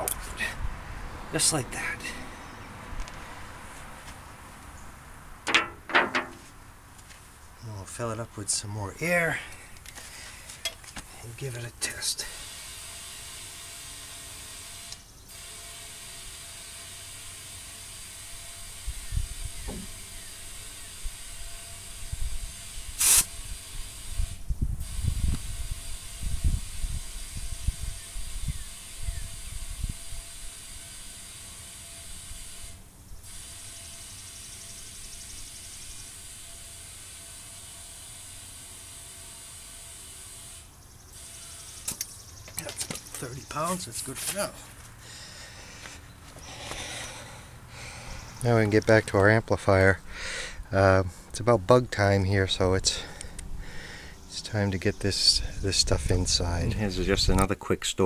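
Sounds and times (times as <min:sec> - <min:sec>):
compressed air hissing into tire: 0:11.9 - 0:42.2.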